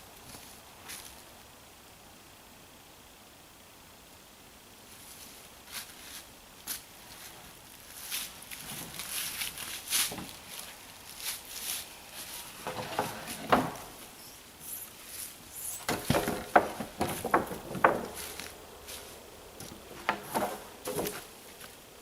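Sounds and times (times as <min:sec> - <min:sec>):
rustling: 0:04.9 - 0:21.9.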